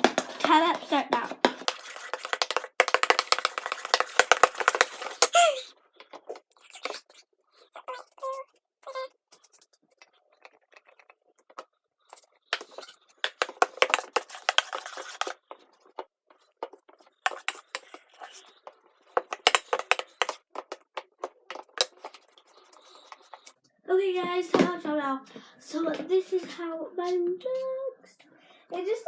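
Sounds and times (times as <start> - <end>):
utensil scraping a bowl: 0.0 - 5.4, 12.5 - 15.7, 16.5 - 23.5.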